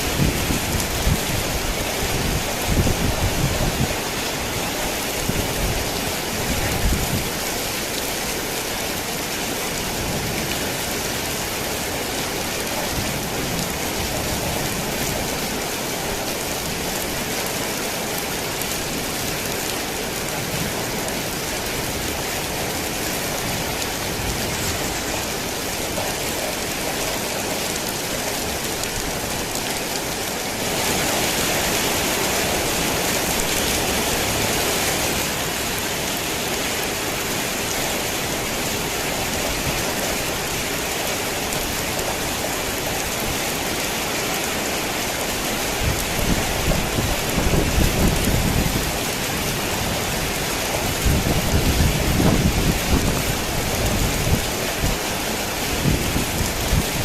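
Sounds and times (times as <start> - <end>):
heavy rain on a tin roof: 0.0 - 57.0.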